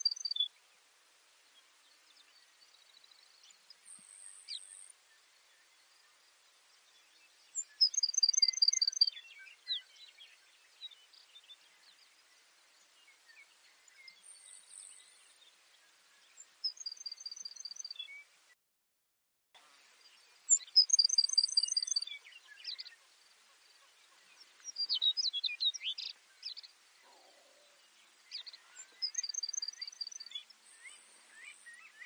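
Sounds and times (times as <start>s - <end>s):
small bird chirps: 0.0s - 0.6s, 1.6s - 18.3s, 19.6s - 32.0s
sparrow singing: 0.0s - 0.6s, 6.8s - 18.3s, 20.0s - 32.0s.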